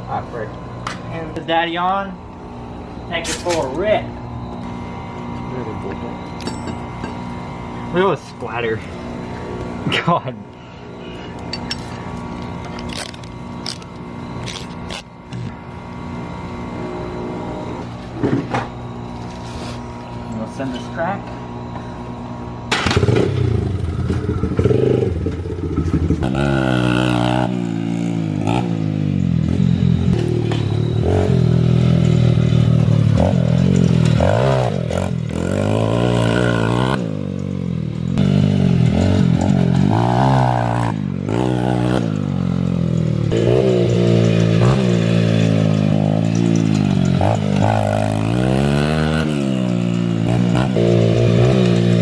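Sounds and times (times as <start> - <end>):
dirt bike engine revving: 21.5 - 52.0.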